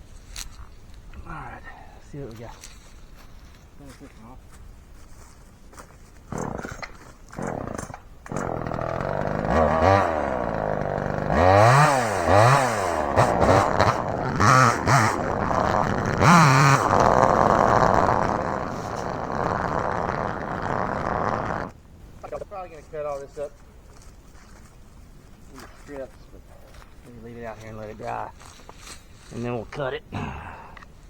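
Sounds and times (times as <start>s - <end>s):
chainsaw cutting through tree: 6.2s - 21.8s.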